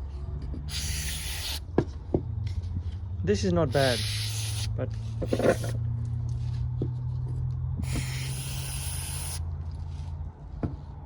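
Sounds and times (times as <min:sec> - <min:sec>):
aerosol spray hiss: 0:00.7 - 0:01.6, 0:03.7 - 0:04.7, 0:07.8 - 0:09.4.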